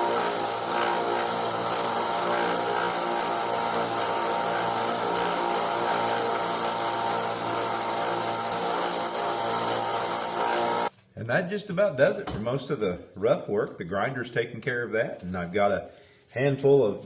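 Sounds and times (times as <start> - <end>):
abrasive belt sanding hiss: 0.0 - 10.9
belt grinder motor hum: 0.0 - 10.9.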